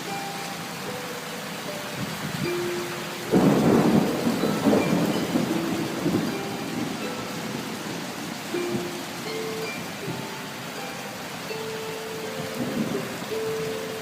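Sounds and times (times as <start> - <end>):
steady rain: 0.0 - 14.0
thunder clap and rumble: 3.3 - 7.8.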